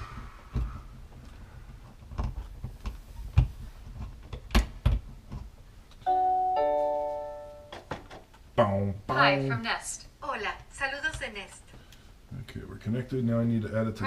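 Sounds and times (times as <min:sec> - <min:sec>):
handling knocks and clicks: 0:01.7 - 0:06.1.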